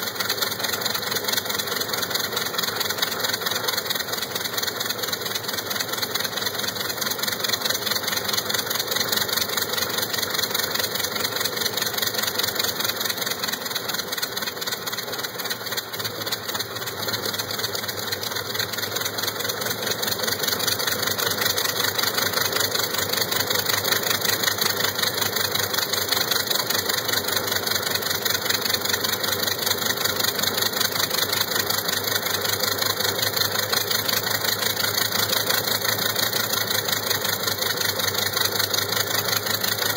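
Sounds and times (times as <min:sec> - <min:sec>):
radial piston engine running: 0:00.0 - 0:39.9.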